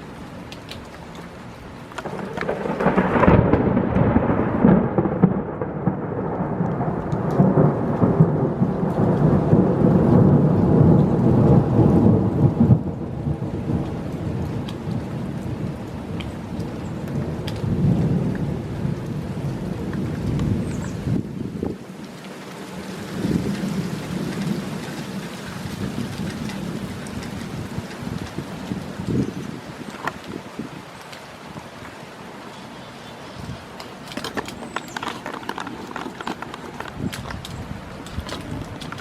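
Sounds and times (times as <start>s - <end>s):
steady rain: 0.0s - 39.0s
thunder rolling: 2.0s - 16.2s, 34.1s - 39.0s.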